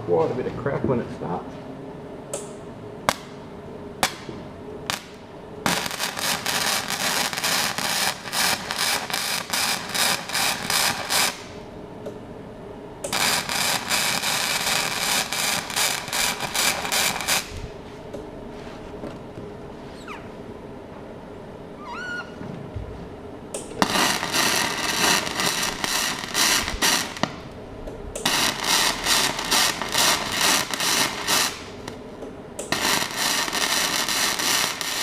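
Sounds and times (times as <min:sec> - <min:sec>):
welding arc crackling: 0:04.9 - 0:11.7, 0:13.0 - 0:17.7, 0:23.6 - 0:27.6, 0:28.2 - 0:32.0, 0:32.6 - 0:35.0.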